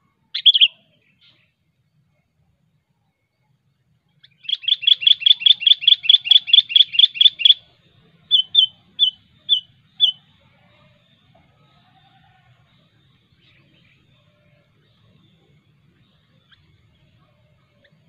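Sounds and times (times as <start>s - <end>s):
bulbul sharp chattering calls: 0.3s - 1.5s, 4.2s - 11.2s.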